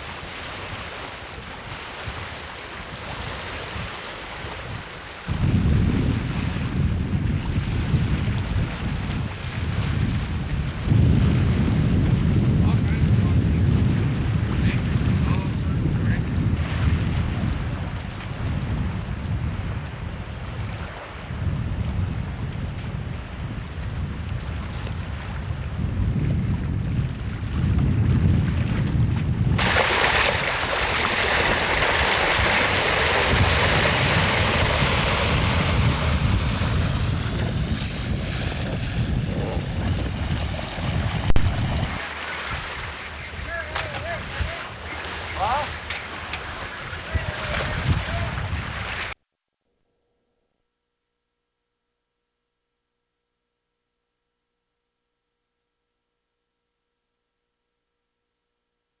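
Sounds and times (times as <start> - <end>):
water rushing along boat hull: 0.0 - 49.2
wind buffeting microphone: 0.0 - 49.2
faint steady tone: 49.2 - 59.0.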